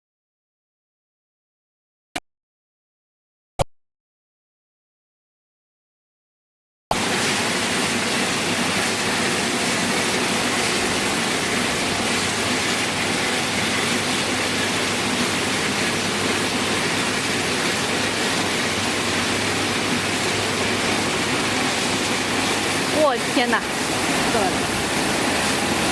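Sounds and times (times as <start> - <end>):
spraying water: 6.9 - 25.9.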